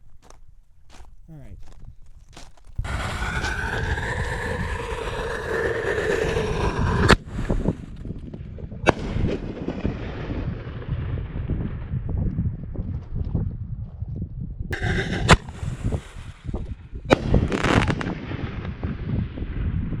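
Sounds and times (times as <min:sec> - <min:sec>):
crackling rumble: 0:00.0 - 0:20.0
firework lift charge bang: 0:02.8 - 0:08.0.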